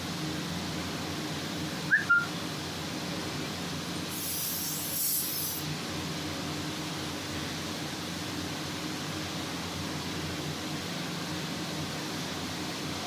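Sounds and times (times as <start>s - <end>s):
machine hum with low drone: 0.0s - 13.0s
short high chirps: 1.9s - 2.3s
hiss of air: 4.0s - 5.8s.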